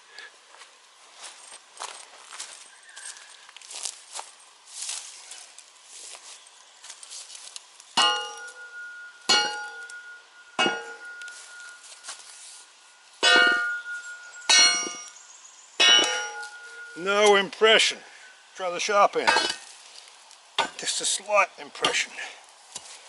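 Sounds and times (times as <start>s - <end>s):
steel tool clanging on log: 8.0s - 12.5s, 13.2s - 15.2s, 15.8s - 17.5s, 19.1s - 19.8s, 20.6s - 21.2s, 21.8s - 22.1s.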